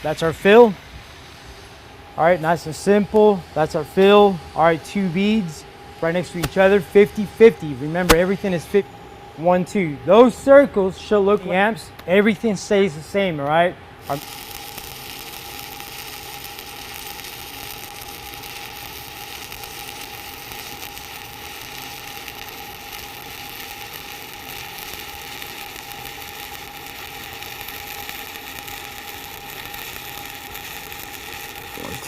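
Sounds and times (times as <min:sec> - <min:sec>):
welding arc crackling: 0:02.2 - 0:08.8, 0:13.6 - 0:32.0.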